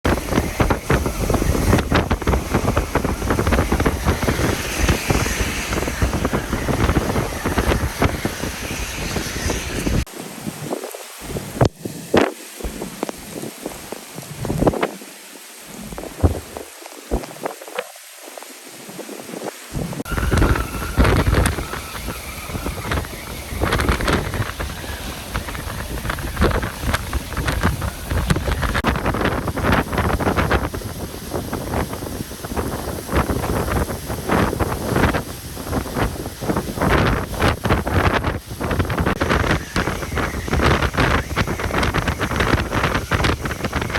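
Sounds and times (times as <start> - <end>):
wind gusts buffeting microphone: 0.0 - 43.9
heavy low rumble: 0.1 - 10.1
crackling: 19.8 - 30.0.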